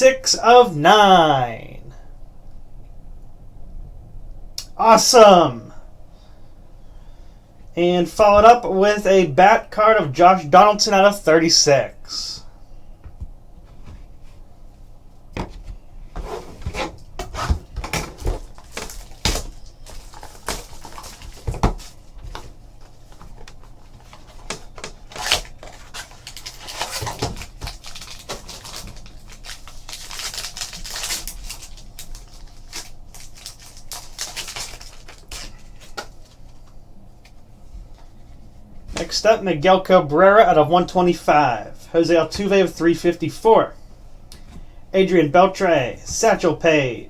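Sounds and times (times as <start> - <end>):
packaging rustling and crinkling: 15.4 - 37.3.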